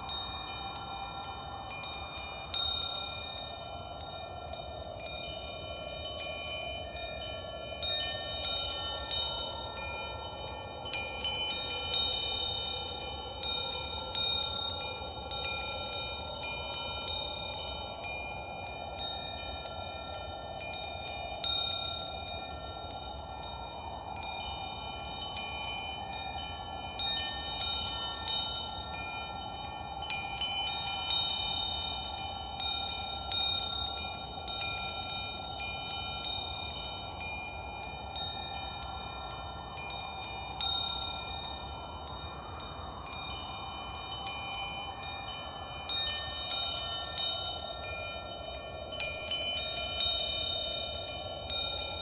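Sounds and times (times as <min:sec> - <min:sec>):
wind chimes ringing: 0:00.0 - 0:52.0.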